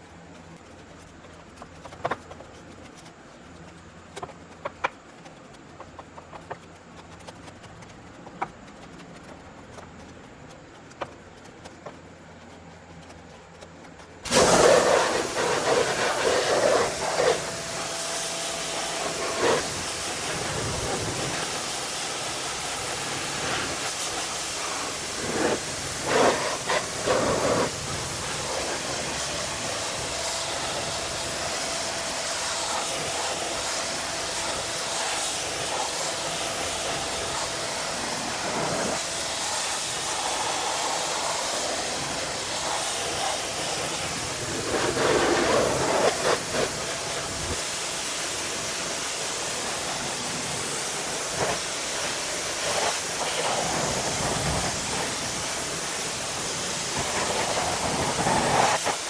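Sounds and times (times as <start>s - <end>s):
hissing pressure washer jet: 14.2s - 59.0s
water spattering: 14.3s - 59.0s.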